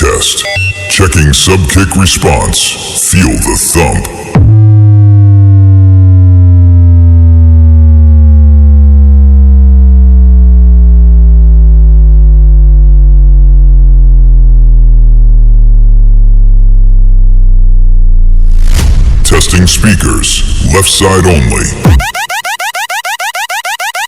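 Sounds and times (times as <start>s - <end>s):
sub-bass tone gliding downward: 4.4s - 20.7s.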